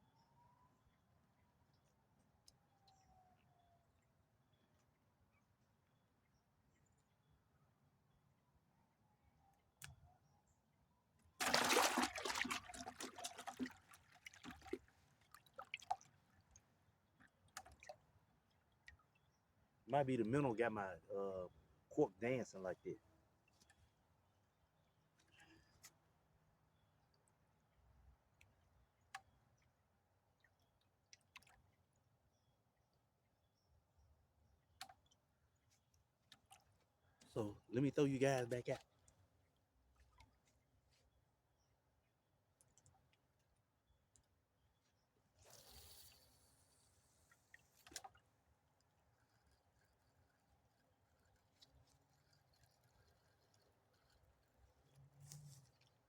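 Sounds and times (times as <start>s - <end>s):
sudden water splash: 11.4s - 13.7s
water dripping and trickling: 11.4s - 19.3s, 30.3s - 32.0s, 45.4s - 56.0s.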